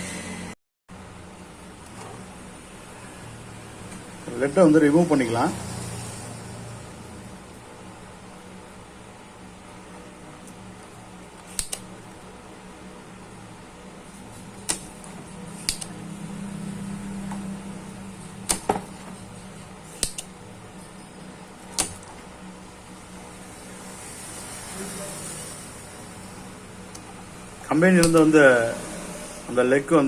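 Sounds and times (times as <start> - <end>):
tools clicking on circuit board: 11.4 - 11.9, 15.6 - 16.0, 20.0 - 20.3, 28.0 - 28.3.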